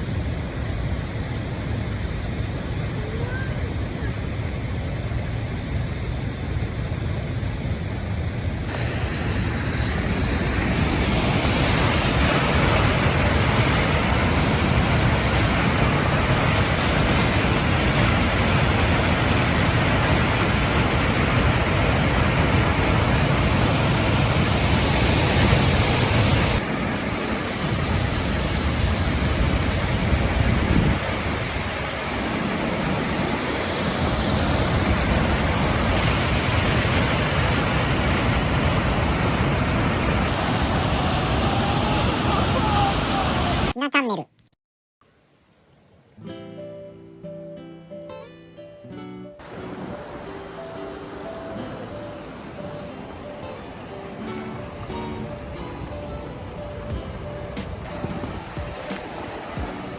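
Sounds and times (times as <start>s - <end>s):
waterfall rushing: 8.7s - 43.8s, 49.4s - 59.9s.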